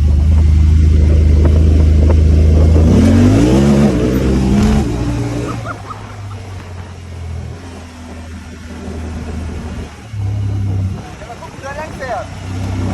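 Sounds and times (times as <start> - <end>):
engine running and revving: 0.0 - 12.9.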